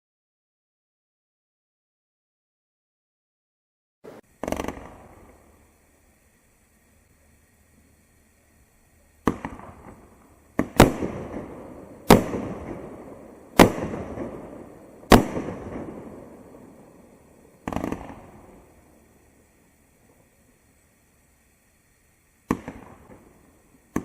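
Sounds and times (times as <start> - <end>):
fireworks bangs with rumble: 4.3 - 5.4, 9.2 - 16.7, 17.6 - 18.7, 22.5 - 24.0.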